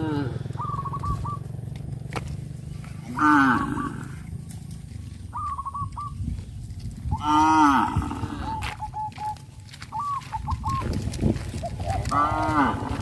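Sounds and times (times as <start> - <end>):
cow mooing: 0.0 - 0.5, 3.1 - 4.2, 7.2 - 8.6, 12.1 - 13.0
thin wavering calls: 0.0 - 1.6, 5.2 - 6.3, 8.4 - 10.9.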